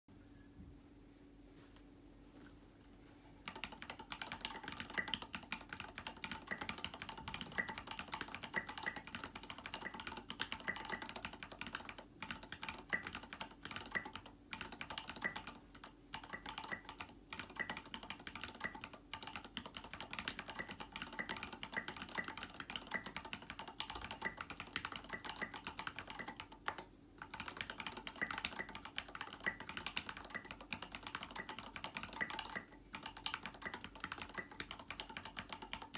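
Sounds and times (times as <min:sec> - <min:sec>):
mechanical keyboard typing: 0:03.4 - 0:35.9.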